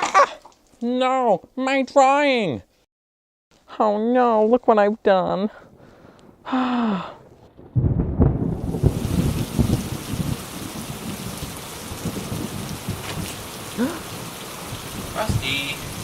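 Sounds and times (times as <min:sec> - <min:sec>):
thunder rumbling: 0:05.6 - 0:16.0
heavy rain: 0:06.5 - 0:16.0.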